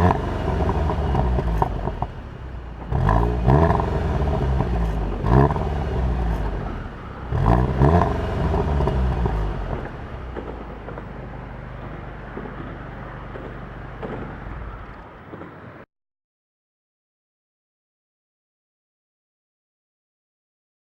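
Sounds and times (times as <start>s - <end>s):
car engine revving: 0.0s - 15.2s.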